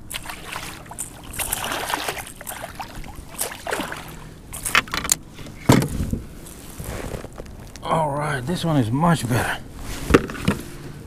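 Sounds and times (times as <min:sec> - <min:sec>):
knocks and clatter in a kayak: 0:04.6 - 0:06.3, 0:10.1 - 0:10.7
heavy thump: 0:05.7 - 0:06.3.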